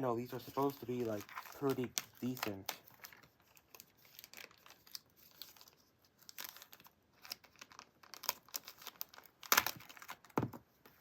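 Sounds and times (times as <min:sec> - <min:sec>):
packaging crinkling: 0:00.3 - 0:10.4.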